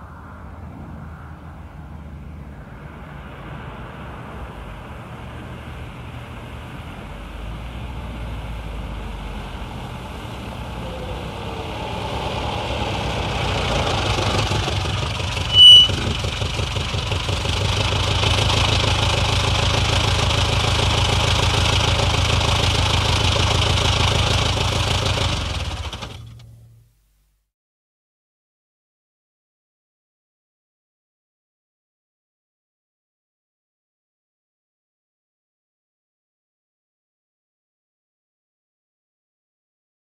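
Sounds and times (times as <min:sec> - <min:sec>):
car engine running: 0:04.9 - 0:26.8
high-pitched brake squeal: 0:15.3 - 0:16.5.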